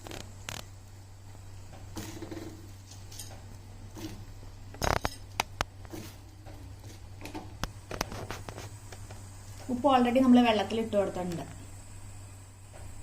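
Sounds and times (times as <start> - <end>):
metal utensils and pot clinking: 2.0 - 3.4.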